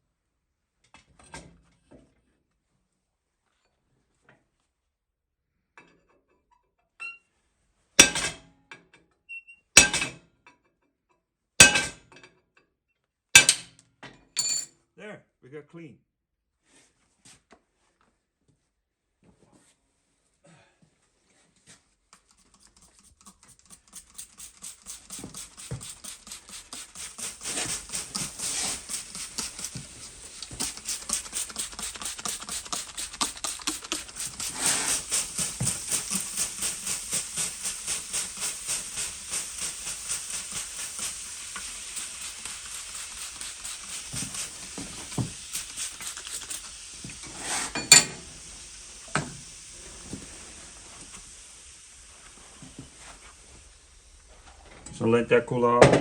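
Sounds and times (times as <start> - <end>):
welding arc sizzling: 22.3 - 54.5.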